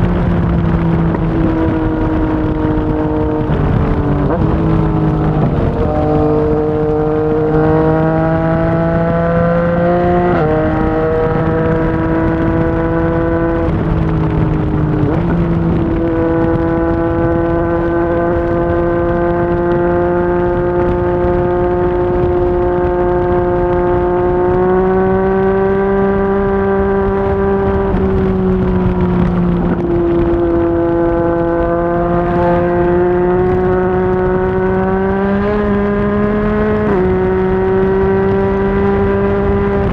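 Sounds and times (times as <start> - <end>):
motorcycle exhaust note: 0.0 - 39.9.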